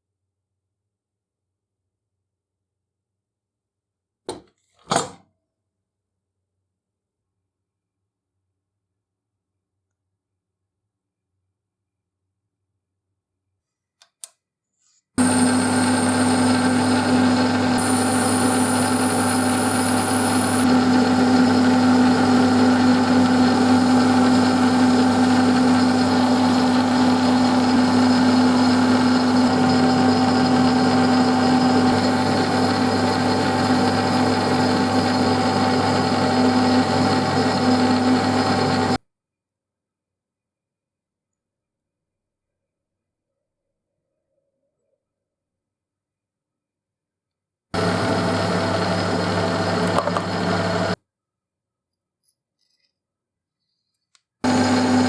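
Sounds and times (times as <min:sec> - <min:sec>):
machine tool hum and whine: 0:15.2 - 0:39.0, 0:47.8 - 0:51.0, 0:54.5 - 0:55.0.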